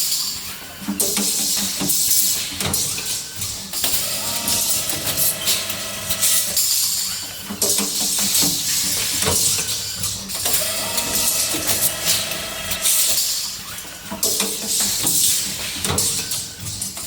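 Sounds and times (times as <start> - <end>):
machine clacking: 3.8 - 7.1, 7.7 - 13.6.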